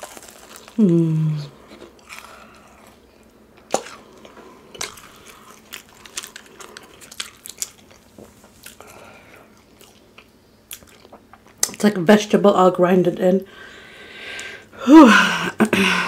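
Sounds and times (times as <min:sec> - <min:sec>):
chewing with wet mouth clicks: 0:03.6 - 0:08.0, 0:09.6 - 0:11.8.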